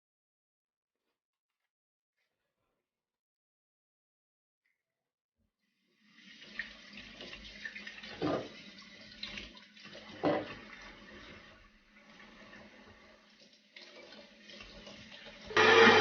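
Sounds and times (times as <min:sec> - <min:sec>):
tap water splashing into sink: 0:06.2 - 0:16.0.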